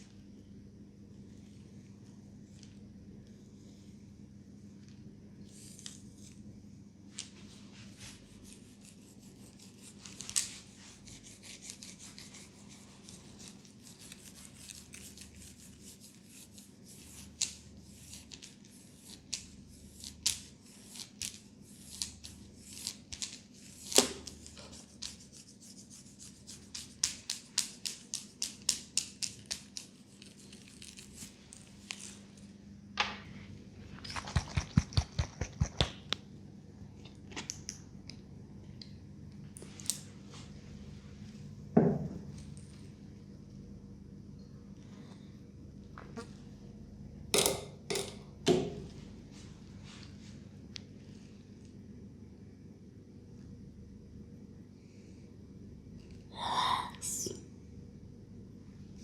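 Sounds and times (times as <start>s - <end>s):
faint steady hum: 0.0s - 59.0s
hands rubbing hair and scalp: 7.2s - 14.3s, 33.9s - 36.0s.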